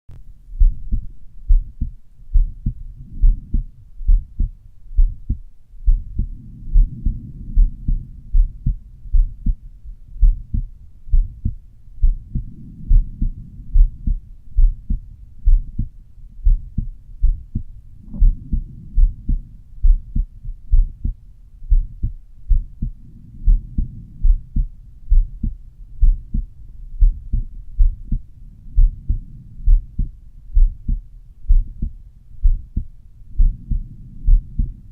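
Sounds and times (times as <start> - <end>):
soft low rush: 0.1 - 34.9
heartbeat lub-dub: 0.6 - 34.9.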